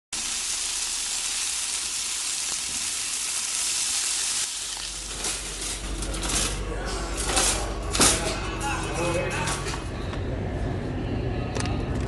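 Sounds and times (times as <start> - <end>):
food sizzling in hot oil: 0.1 - 5.0.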